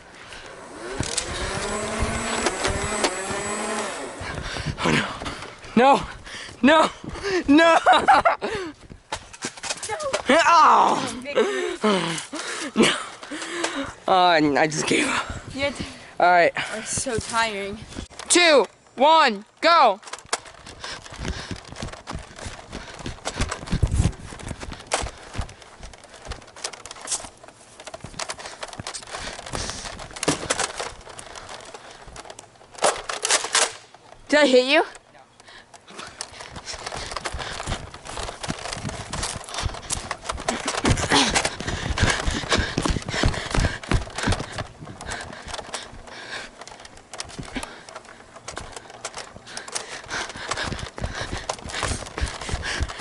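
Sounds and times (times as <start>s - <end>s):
running footfalls: 0.0s - 14.0s, 14.7s - 18.2s, 20.2s - 33.2s, 35.5s - 53.0s
camera thumps and knocks: 1.0s - 3.5s, 20.2s - 32.2s, 36.3s - 53.0s
rustling: 20.0s - 53.0s.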